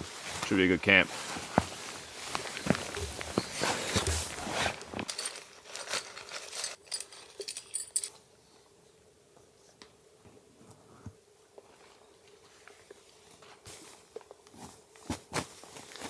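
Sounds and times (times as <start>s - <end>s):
gear rustling with metallic clinks: 0.3s - 8.2s.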